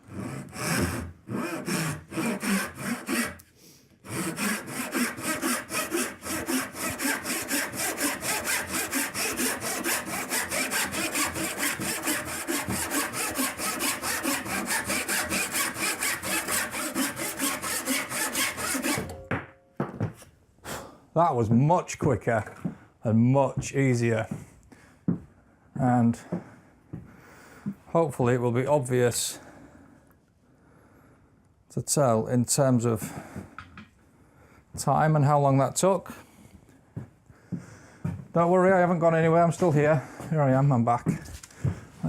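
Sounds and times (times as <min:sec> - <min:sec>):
handsaw sawing wood: 0:00.0 - 0:03.4, 0:04.0 - 0:19.1.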